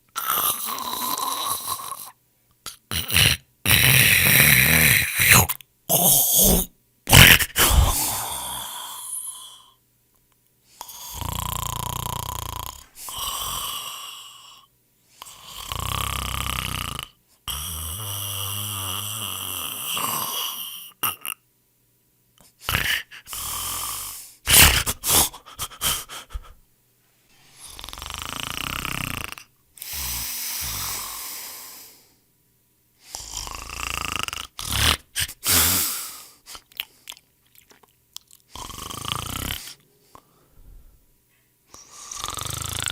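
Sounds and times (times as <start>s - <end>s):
person snoring loudly: 0.1s - 9.8s, 10.8s - 21.4s, 22.6s - 25.4s, 27.6s - 32.0s, 33.0s - 36.4s, 38.5s - 39.8s, 41.7s - 42.9s.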